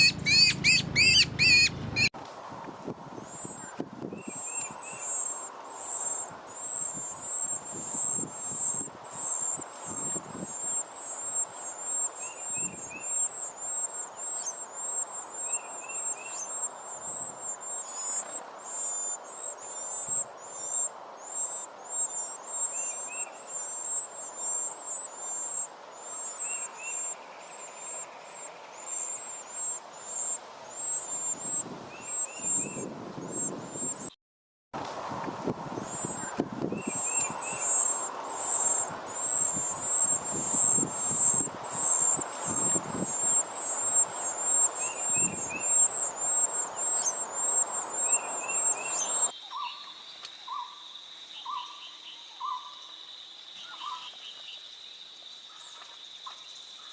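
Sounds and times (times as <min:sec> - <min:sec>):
bird double chirps: 0:00.0 - 0:02.1
nestlings cheeping: 0:00.0 - 0:02.1, 0:36.8 - 0:49.3.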